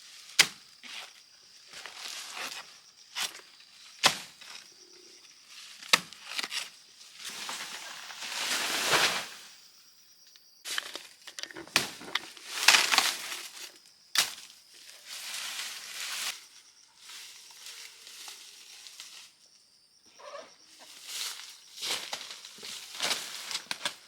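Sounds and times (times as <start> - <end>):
rustling and crunching: 0.0 - 9.5, 10.6 - 19.5, 20.7 - 24.0
poultry calling: 20.1 - 20.6.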